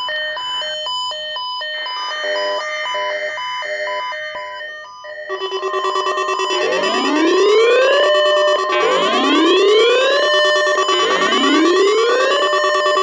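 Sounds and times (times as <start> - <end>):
alternating high and low beeps: 0.0 - 13.0
chiming run of tones: 5.3 - 13.0
rapid pulsing tone: 5.3 - 13.0.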